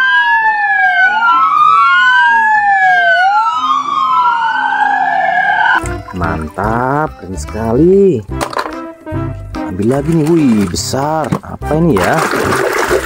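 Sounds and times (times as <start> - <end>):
police siren wailing: 0.0 - 5.8.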